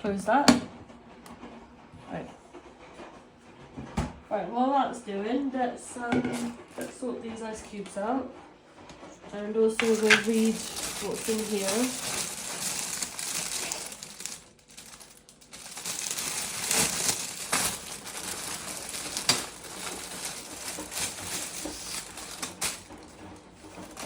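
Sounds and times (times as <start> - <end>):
packaging crinkling and rustling: 9.8 - 24.0.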